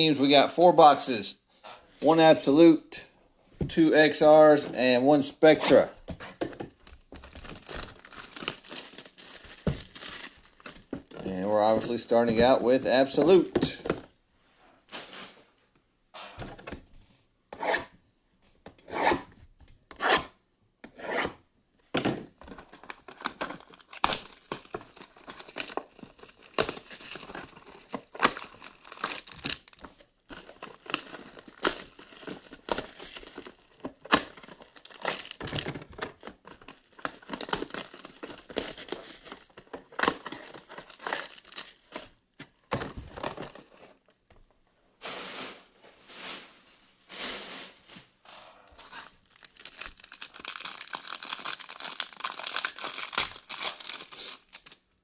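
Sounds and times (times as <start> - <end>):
plastic crinkling and rustling: 6.4 - 12.5, 22.4 - 44.1, 48.8 - 54.9
plastic wrapping tearing: 6.8 - 10.9, 22.7 - 42.1, 48.8 - 54.9.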